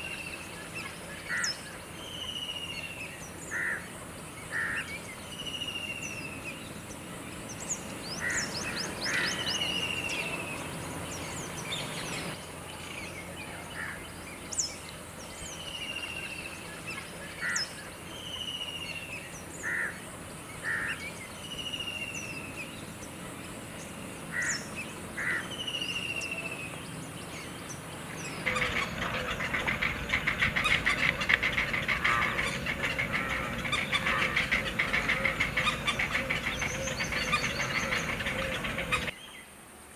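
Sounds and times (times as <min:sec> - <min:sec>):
rapid chattering of many birds: 0:00.0 - 0:39.2
birds whistling: 0:07.5 - 0:12.4, 0:24.4 - 0:39.2.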